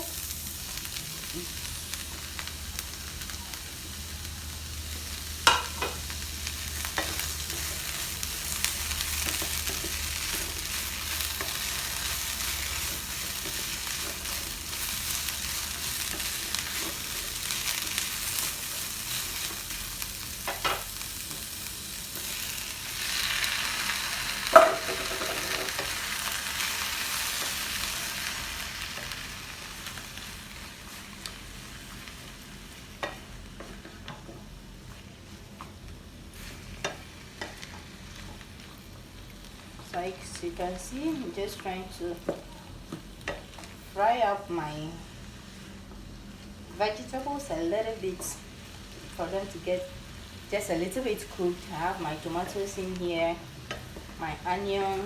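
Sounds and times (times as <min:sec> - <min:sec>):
vegetables sizzling in a frying pan: 0:00.0 - 0:55.0
knocks against a pan: 0:24.5 - 0:25.7.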